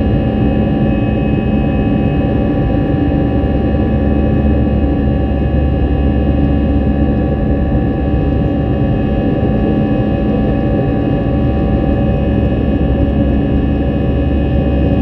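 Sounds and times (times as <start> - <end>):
jet engine cabin rumble: 0.0 - 15.0.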